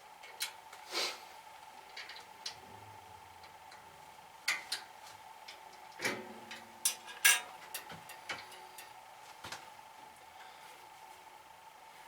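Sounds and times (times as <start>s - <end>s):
metal parts clicking and clinking: 6.0s - 8.9s.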